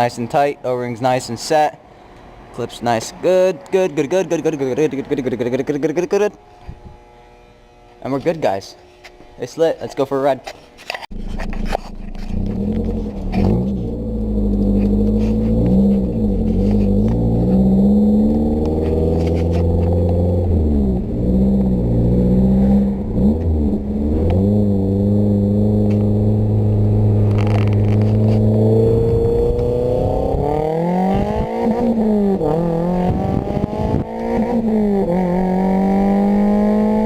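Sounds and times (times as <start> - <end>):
car engine and exhaust while driving: 11.1 - 37.0.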